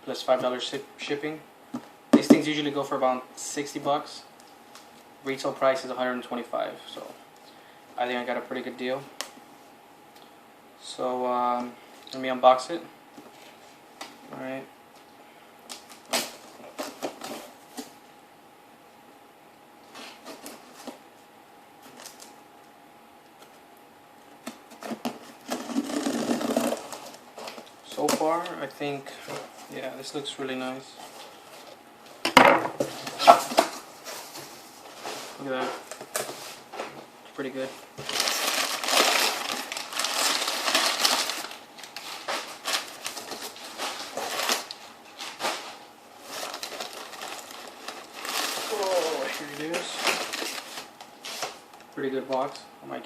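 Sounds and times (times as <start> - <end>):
cardboard package rustling: 15.7 - 17.9, 20.0 - 21.0, 24.4 - 28.4, 37.4 - 51.7.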